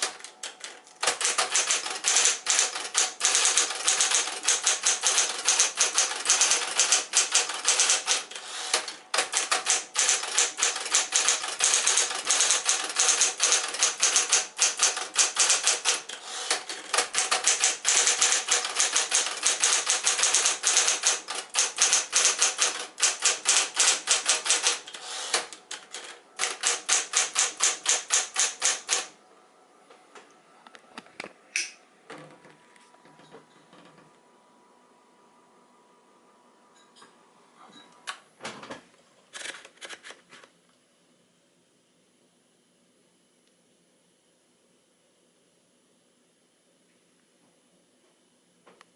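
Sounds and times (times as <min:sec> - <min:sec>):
electric typewriter keystrokes: 0:00.0 - 0:29.1
typewriter click: 0:00.0 - 0:29.1
typewriter motor hum: 0:00.0 - 0:29.2.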